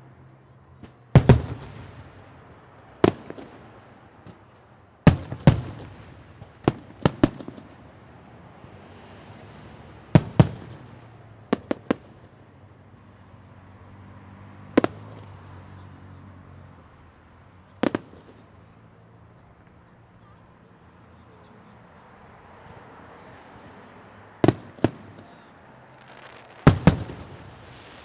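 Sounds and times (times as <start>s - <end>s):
fireworks bangs: 0.8s - 8.2s, 9.0s - 12.5s, 13.9s - 18.5s, 23.9s - 28.0s.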